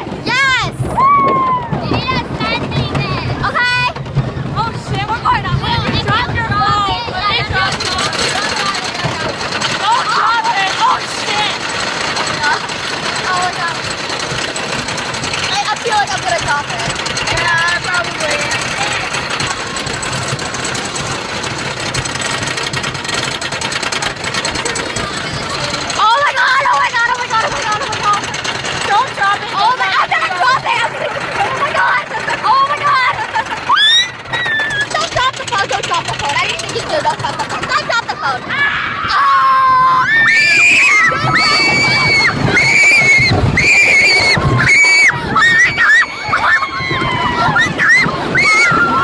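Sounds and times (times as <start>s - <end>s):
low hum: 0.0s - 49.0s
roller coaster rattling: 0.0s - 49.0s
riders screaming: 0.9s - 1.9s, 24.9s - 35.3s, 38.2s - 49.0s.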